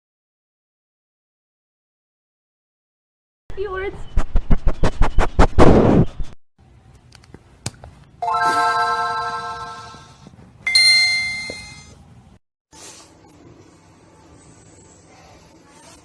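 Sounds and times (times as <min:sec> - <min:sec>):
doorbell chime notes: 0:08.2 - 0:12.0.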